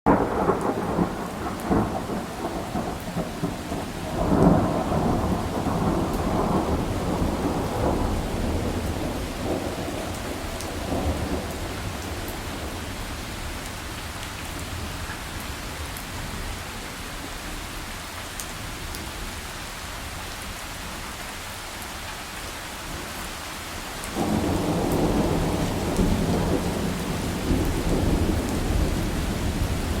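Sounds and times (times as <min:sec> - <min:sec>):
rolling thunder: 0:00.1 - 0:13.6, 0:24.2 - 0:30.0
heavy rain falling: 0:00.1 - 0:30.0.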